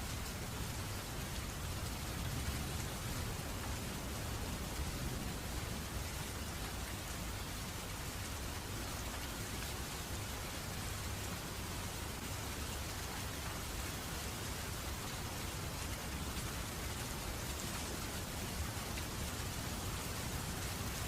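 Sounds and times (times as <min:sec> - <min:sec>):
steady rain falling: 0:00.0 - 0:21.0.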